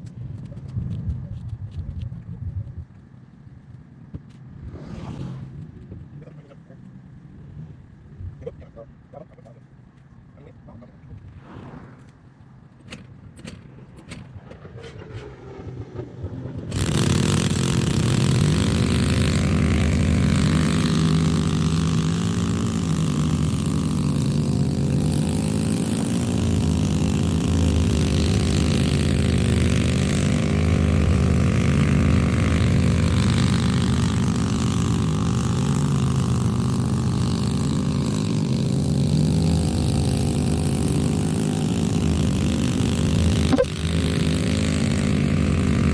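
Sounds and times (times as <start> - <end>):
loud engine running: 12.9 - 45.9.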